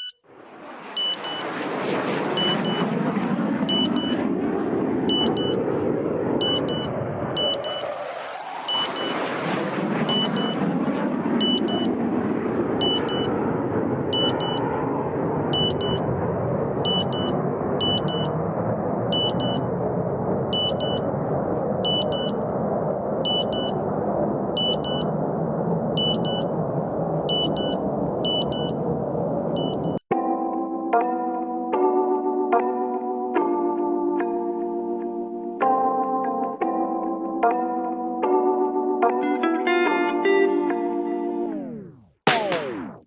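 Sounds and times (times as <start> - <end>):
jet engine roar: 0.0 - 30.1, 40.3 - 43.0
high electronic double beep: 1.0 - 1.4, 2.4 - 2.8, 3.7 - 4.2, 5.1 - 5.6, 6.4 - 7.9, 8.7 - 9.2, 10.1 - 10.6, 11.4 - 11.9, 12.8 - 13.3, 14.2 - 14.7, 15.6 - 16.2, 16.9 - 18.4, 19.2 - 19.8, 20.6 - 21.1, 21.9 - 22.4, 23.3 - 23.8, 24.6 - 25.1, 26.0 - 26.6, 27.3 - 28.8, 29.6 - 30.0.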